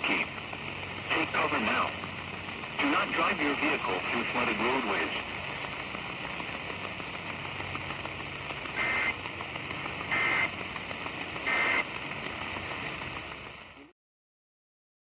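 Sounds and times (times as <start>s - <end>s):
radio hiss: 0.0s - 13.9s.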